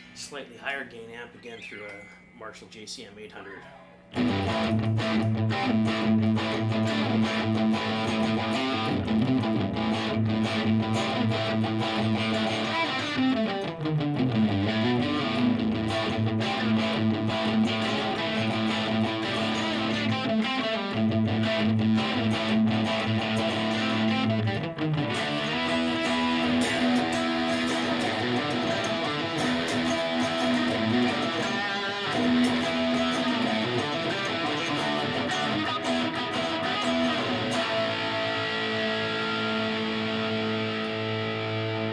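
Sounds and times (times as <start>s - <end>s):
overdriven electric guitar chords: 4.1s - 41.9s.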